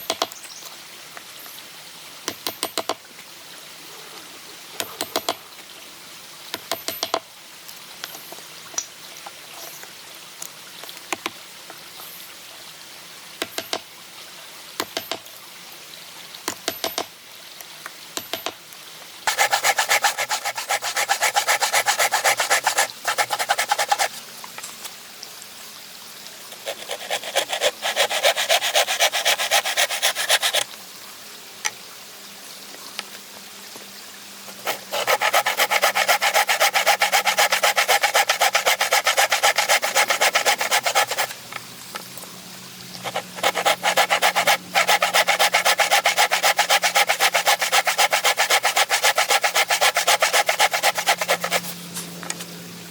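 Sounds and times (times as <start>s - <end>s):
hand tool cutting wood: 19.3s - 24.1s, 26.6s - 30.7s, 34.5s - 41.3s, 43.0s - 51.8s.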